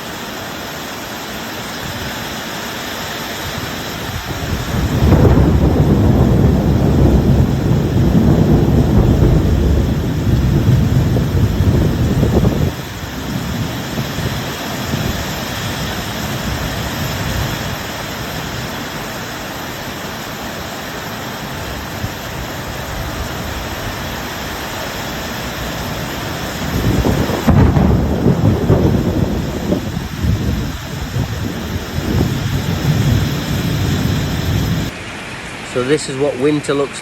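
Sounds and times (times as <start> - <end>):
heavy rain falling: 0.0 - 37.0
thunder rumbling: 3.9 - 19.0, 21.6 - 35.0.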